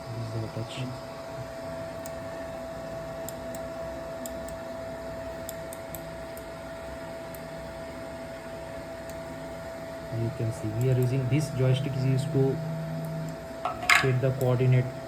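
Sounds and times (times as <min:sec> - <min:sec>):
soldering robot whining: 0:07.2 - 0:15.0.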